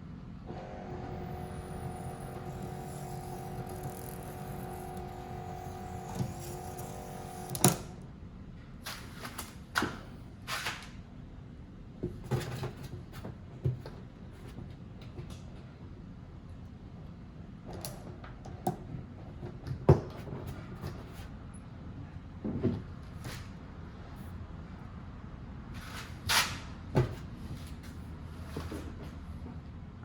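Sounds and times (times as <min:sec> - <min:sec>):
antenna motor whine: 0:00.5 - 0:08.0.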